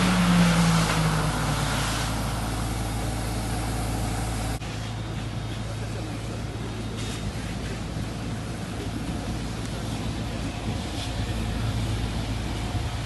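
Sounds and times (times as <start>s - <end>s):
vehicle engine: 0.0s - 13.0s.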